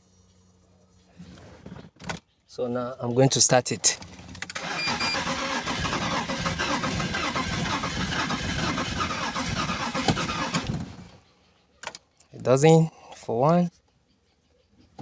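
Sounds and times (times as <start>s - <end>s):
engine cranking on starter motor: 4.2s - 11.1s.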